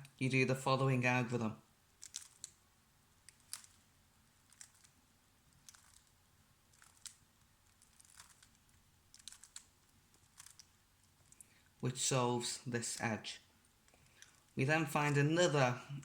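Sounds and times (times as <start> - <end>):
plastic cube layers clicking: 2.0 - 2.6, 3.2 - 11.5.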